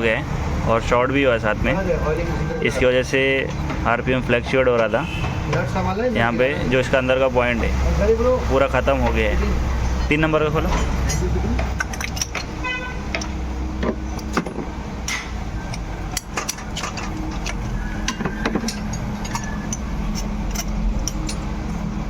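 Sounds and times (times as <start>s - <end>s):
metal hand tools clinking: 10.7s - 13.4s, 15.1s - 21.8s.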